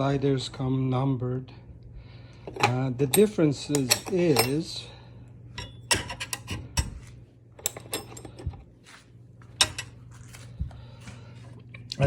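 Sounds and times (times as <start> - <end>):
metal parts clinking together: 2.5 - 4.7, 7.6 - 8.5, 9.6 - 10.0.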